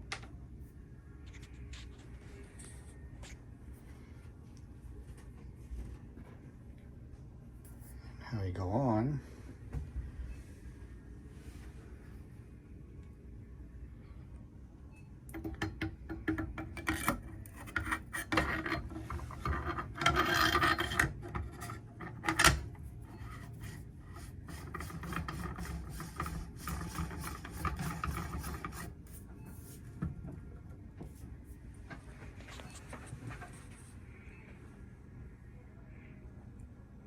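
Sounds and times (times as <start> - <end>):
metal scraping on metal: 15.4 - 29.8.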